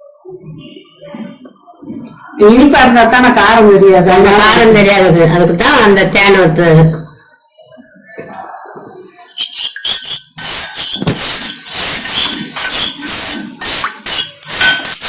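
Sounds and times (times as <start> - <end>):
metal spoon scraping metal pan: 9.3 - 15.0.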